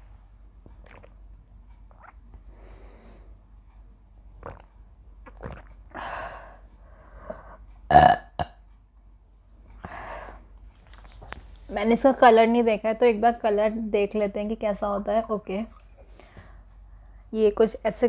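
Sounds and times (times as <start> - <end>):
woman burping: 7.9 - 8.6.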